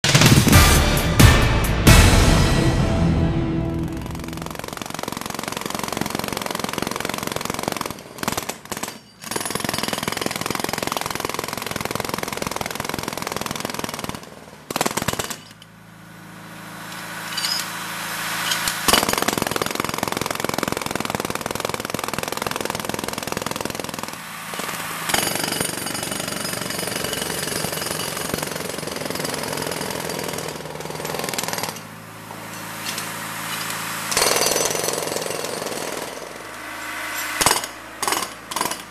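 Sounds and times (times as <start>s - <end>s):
jackhammers hammering concrete: 0.0s - 38.9s
steady hum: 15.9s - 19.0s, 32.0s - 38.9s.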